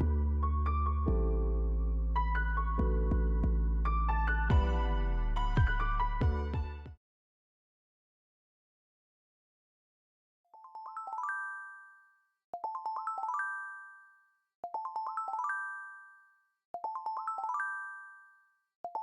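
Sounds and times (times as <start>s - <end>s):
chime-like music jingle: 10.6s - 19.0s.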